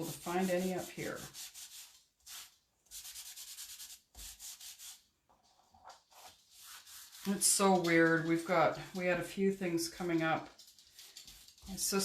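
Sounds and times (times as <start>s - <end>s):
tool rubbing over a surface: 0.0s - 7.9s.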